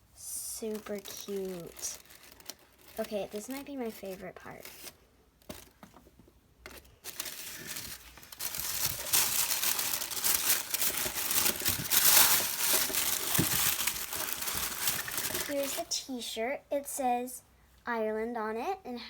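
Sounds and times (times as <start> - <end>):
packaging crinkling: 0.7 - 6.0, 6.7 - 15.9.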